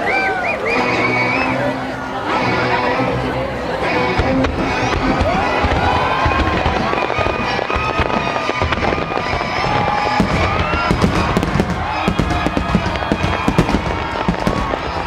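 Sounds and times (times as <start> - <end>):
fireworks bangs and crackles: 4.0 - 15.0.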